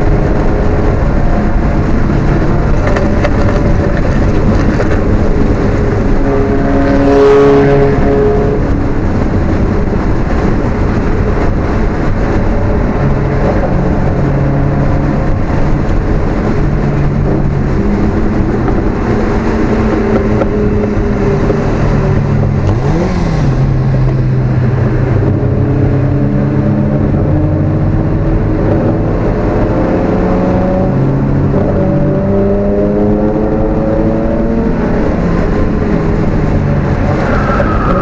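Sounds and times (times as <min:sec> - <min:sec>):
car engine running hard: 0:00.0 - 0:38.0
wind and road noise: 0:00.0 - 0:38.0.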